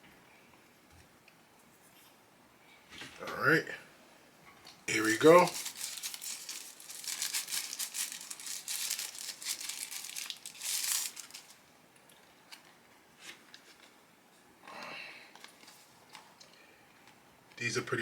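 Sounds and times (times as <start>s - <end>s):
plastic film crinkling: 4.9s - 11.6s.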